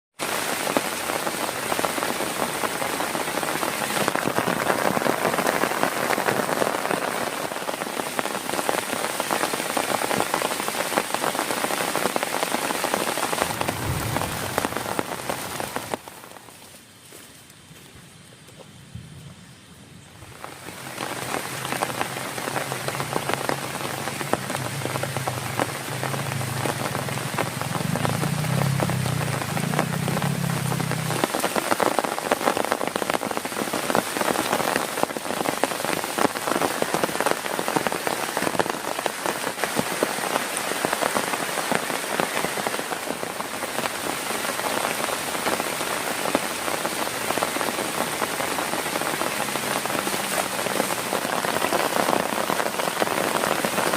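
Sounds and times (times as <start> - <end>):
heavy rain on a tent: 0.1 - 19.2, 20.1 - 53.9
low rumble: 13.4 - 15.9.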